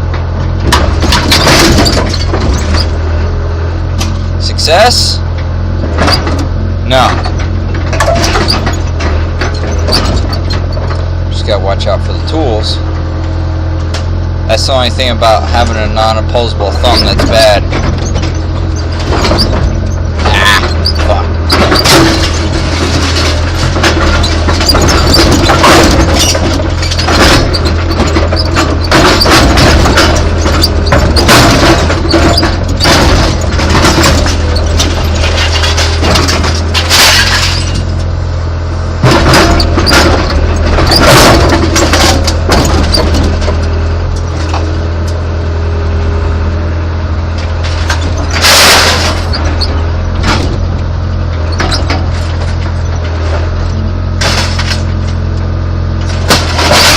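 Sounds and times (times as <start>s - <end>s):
excavator diesel engine running: 0.0s - 56.9s
metallic clanks and knocks: 0.1s - 3.0s, 5.4s - 11.1s, 15.2s - 38.0s, 39.0s - 45.2s, 56.0s - 56.9s.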